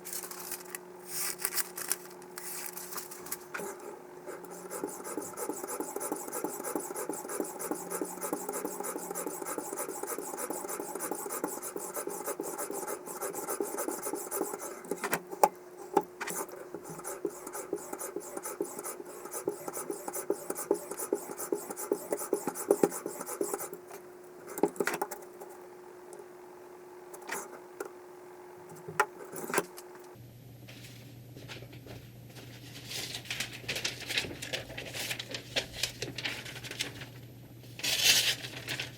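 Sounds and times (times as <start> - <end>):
stone rasping on knife edge: 4.4 - 15.0, 16.4 - 23.7.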